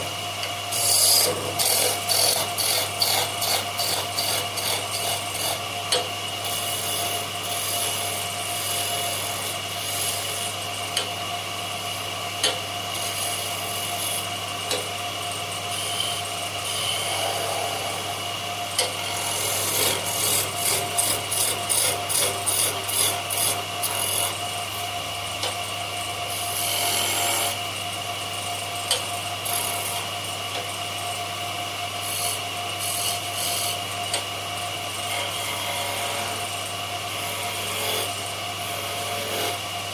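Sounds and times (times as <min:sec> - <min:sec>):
tool rasping on wood: 0:00.7 - 0:11.1, 0:15.6 - 0:18.2, 0:18.8 - 0:24.4, 0:26.3 - 0:27.6, 0:32.0 - 0:34.2, 0:35.0 - 0:39.6.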